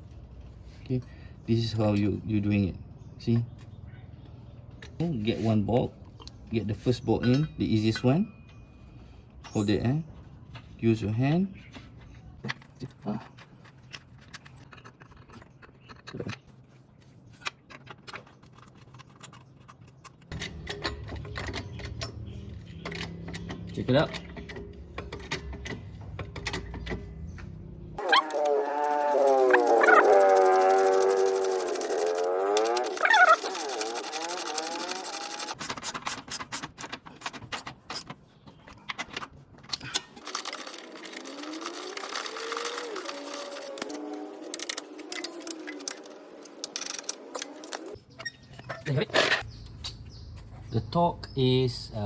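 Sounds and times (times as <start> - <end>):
metallic clicks of bolt and tools: 17.4 - 27.5.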